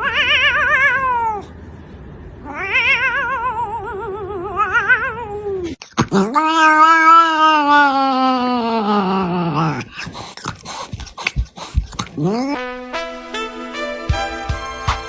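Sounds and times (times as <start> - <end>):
cat yowling: 0.0 - 1.5, 2.4 - 10.0, 12.1 - 12.6.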